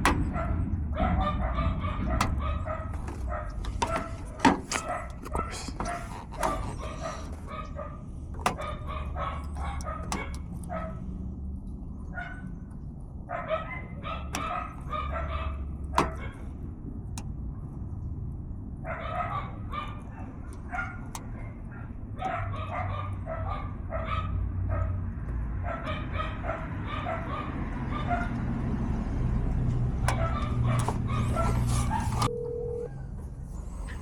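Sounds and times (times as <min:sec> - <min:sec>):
dog barking: 0:00.0 - 0:11.1, 0:12.0 - 0:12.6, 0:13.3 - 0:16.5, 0:18.8 - 0:28.6, 0:30.0 - 0:33.0
steady low rumble: 0:00.0 - 0:13.3.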